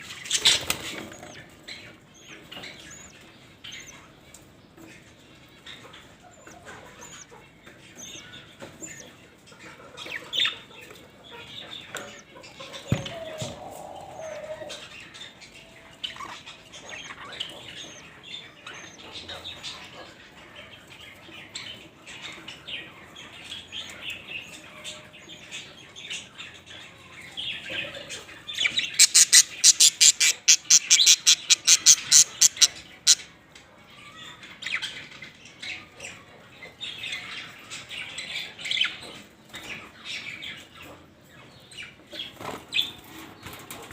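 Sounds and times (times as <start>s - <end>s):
budgerigars chirping softly: 0.1s - 33.4s, 34.0s - 43.8s
chick begging squeaks: 0.4s - 3.2s, 5.8s - 14.8s, 16.1s - 19.4s, 27.7s - 33.3s.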